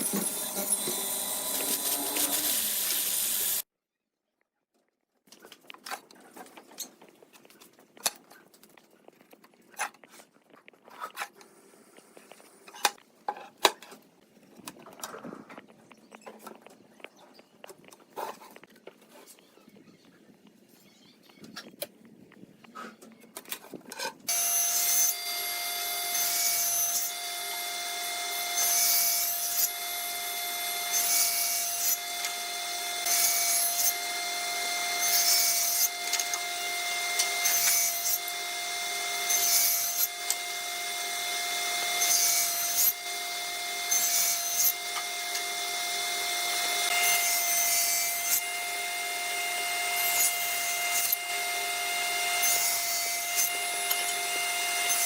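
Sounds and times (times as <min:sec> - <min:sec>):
power tool motor whine: 0:00.0 - 0:03.7, 0:24.3 - 0:55.0.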